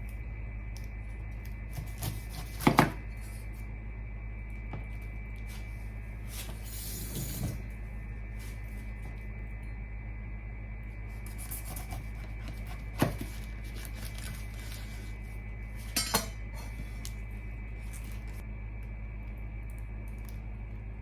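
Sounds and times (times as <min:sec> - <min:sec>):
steady low hum: 0:00.0 - 0:21.0
dishes and cutlery clinking: 0:16.0 - 0:16.4.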